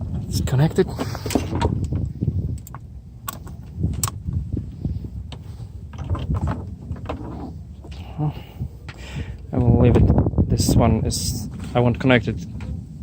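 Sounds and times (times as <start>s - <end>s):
clicks and knocks handling wiring: 5.3s - 8.1s.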